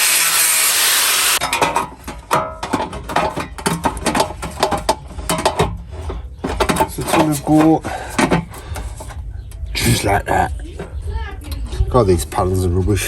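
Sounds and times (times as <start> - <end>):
power tool cutting steel: 0.0 - 1.4
metallic clanks of steel panel: 1.4 - 9.6.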